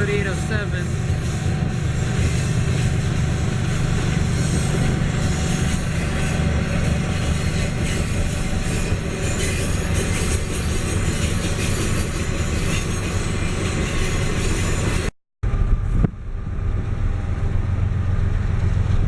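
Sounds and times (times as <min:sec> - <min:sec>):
freight train rumbling on rails: 0:00.0 - 0:19.0.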